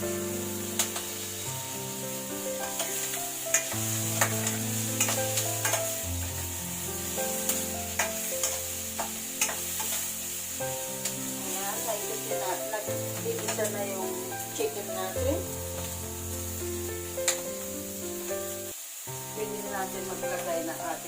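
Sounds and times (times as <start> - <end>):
background music with held chords: 0.0 - 21.0
chicken sizzling in hot oil: 0.0 - 21.0
spatula clicking against pan: 0.8 - 1.1, 2.7 - 6.0, 7.5 - 10.0, 13.4 - 13.7, 17.2 - 17.4.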